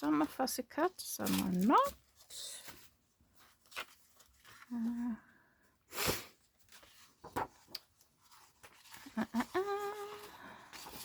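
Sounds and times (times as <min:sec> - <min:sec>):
paper cutouts rustling: 0:00.0 - 0:05.2, 0:06.5 - 0:11.0
woman humming: 0:09.2 - 0:10.3.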